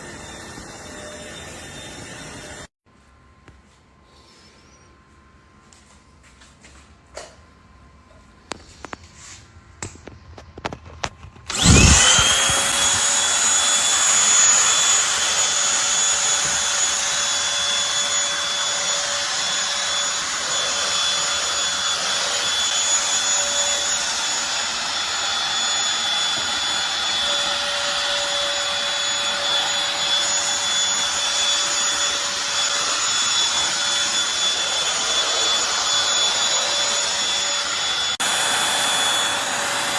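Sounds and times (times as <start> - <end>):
stick vacuum motor whining: 0.0 - 2.7, 11.4 - 39.9.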